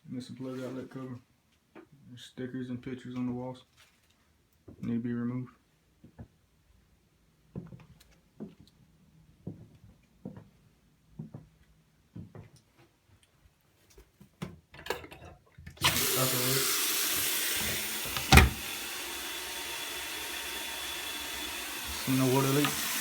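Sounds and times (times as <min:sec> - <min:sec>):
footsteps on floor: 0:09.4 - 0:10.6, 0:11.2 - 0:11.5, 0:12.1 - 0:12.6
water running into sink: 0:15.8 - 0:23.0.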